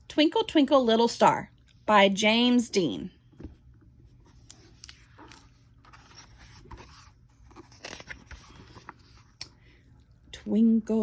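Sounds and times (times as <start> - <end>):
paper rustling and scraping: 4.2 - 9.4.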